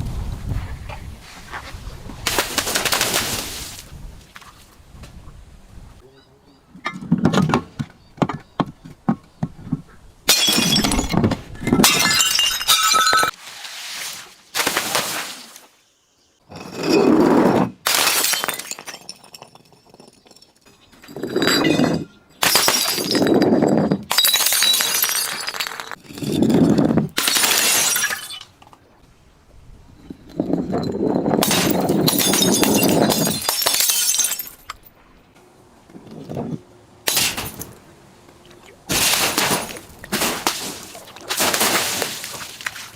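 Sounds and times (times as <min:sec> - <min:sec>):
glass bottles smashing: 0:10.3 - 0:13.4, 0:17.8 - 0:28.6, 0:30.3 - 0:34.9, 0:37.1 - 0:37.8, 0:38.9 - 0:42.5
glass crushing and shattering: 0:10.3 - 0:13.4, 0:17.9 - 0:28.6, 0:30.2 - 0:34.9, 0:37.1 - 0:37.8
glass shards ringing: 0:18.3 - 0:28.4, 0:30.3 - 0:34.8.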